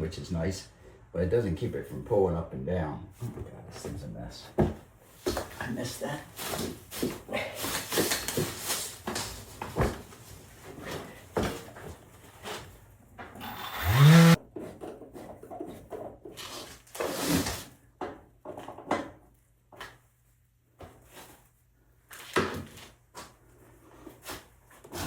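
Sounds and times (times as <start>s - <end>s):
loud rising tool whine: 13.4s - 14.4s.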